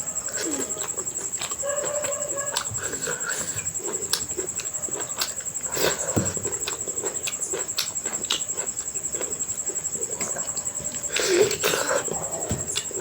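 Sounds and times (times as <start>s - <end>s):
chewing and lip-smacking: 0.2s - 13.0s.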